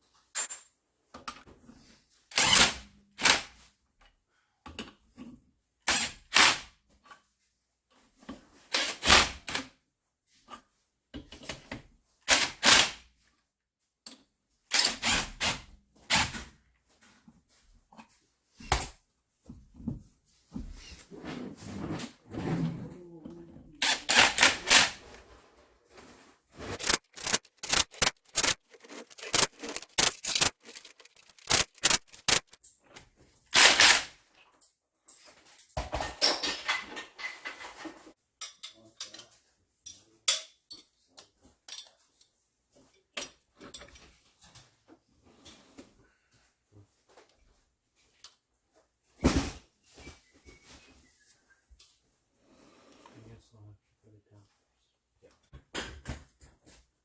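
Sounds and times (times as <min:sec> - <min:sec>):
tools clicking and knocking: 0:23.8 - 0:25.1, 0:26.7 - 0:32.6.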